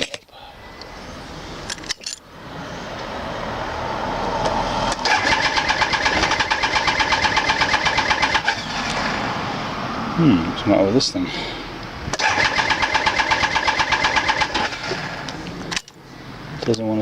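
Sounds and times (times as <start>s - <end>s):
motorcycle starter cranking: 4.9s - 9.0s, 12.1s - 16.0s.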